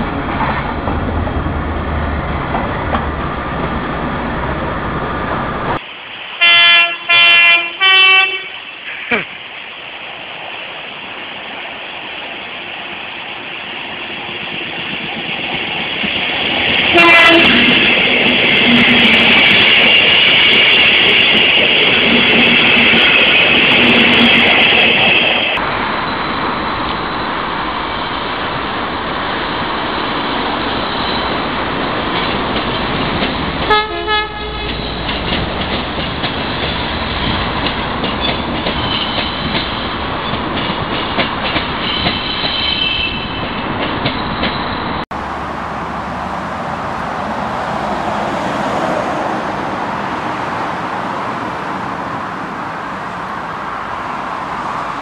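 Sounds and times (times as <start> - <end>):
train horn: 6.4 - 8.8, 16.9 - 19.1, 33.7 - 34.9
train wheel clatter: 30.9 - 33.8, 34.5 - 53.3.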